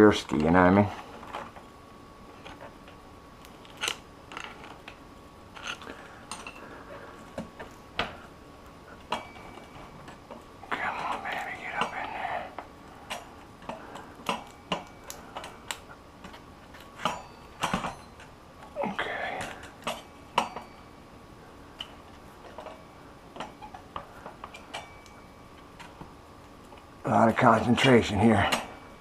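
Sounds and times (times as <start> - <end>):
metallic clinks and knocks: 13.1 - 18.3.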